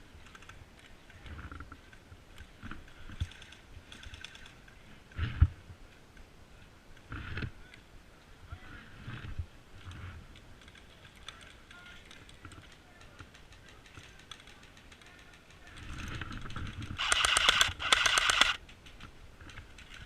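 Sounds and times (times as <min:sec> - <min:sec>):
airsoft gun full-auto bursts: 0:17.0 - 0:18.6.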